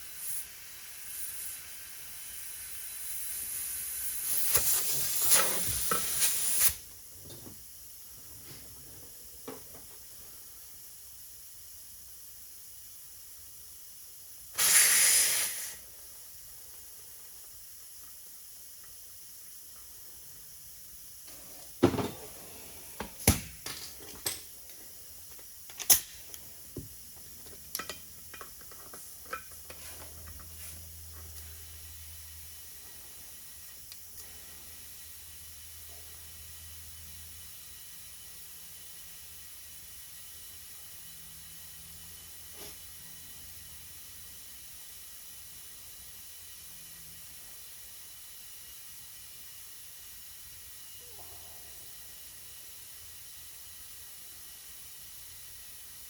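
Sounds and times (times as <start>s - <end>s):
compressed air hissing: 0.0s - 6.9s, 14.5s - 16.7s, 21.3s - 23.6s, 42.4s - 43.0s.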